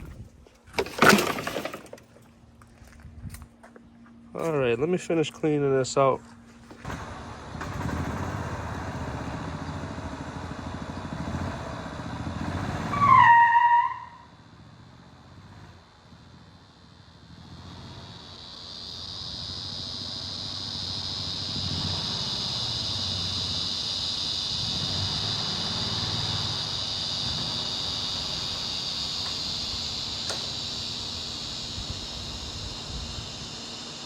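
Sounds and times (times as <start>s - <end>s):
high-pitched insect chorus: 16.2s - 34.0s.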